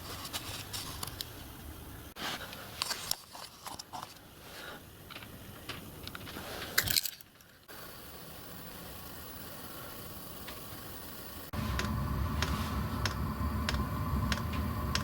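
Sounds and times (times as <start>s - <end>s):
steady hiss: 7.6s - 15.0s.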